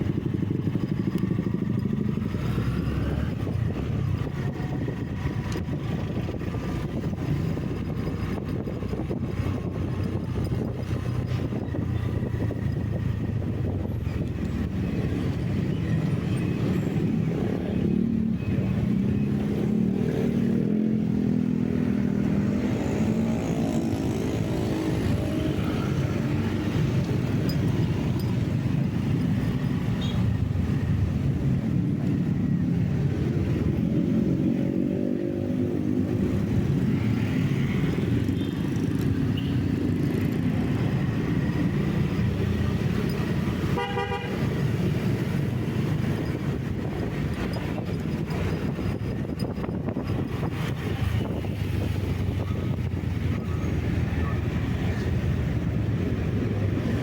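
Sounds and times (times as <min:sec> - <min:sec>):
road noise rumble: 0:00.0 - 0:57.0
car horn toot: 0:43.7 - 0:44.5.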